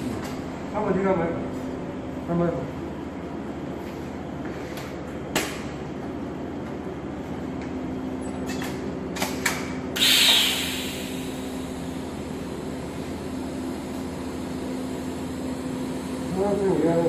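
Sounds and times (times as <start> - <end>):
brief loud hiss: 10.0 - 11.4
welding equipment humming: 10.0 - 17.0.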